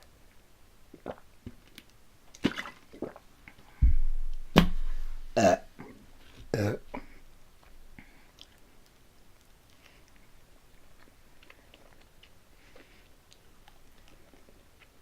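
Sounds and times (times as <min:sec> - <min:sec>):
person burping: 0:05.4 - 0:05.9, 0:06.5 - 0:07.1.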